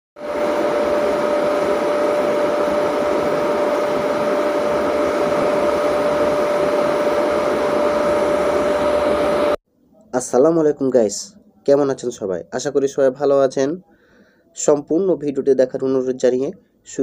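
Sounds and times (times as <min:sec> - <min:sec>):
machinery drone with whine: 0:00.2 - 0:09.6.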